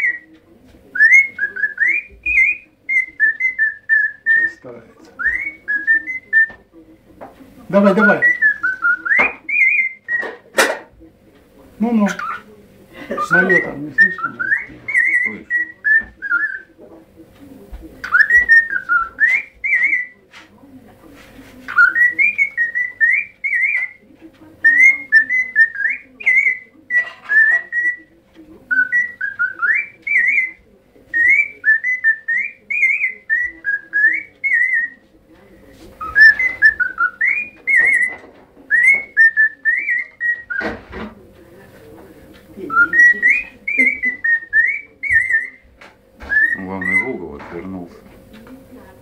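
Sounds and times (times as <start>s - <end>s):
parrot whistling: 0.0s - 0.3s, 0.9s - 4.6s, 5.2s - 6.6s, 7.8s - 10.4s, 13.2s - 16.7s, 18.0s - 20.2s, 21.7s - 24.0s, 24.6s - 28.1s, 28.7s - 35.1s, 36.0s - 40.8s, 42.6s - 47.2s.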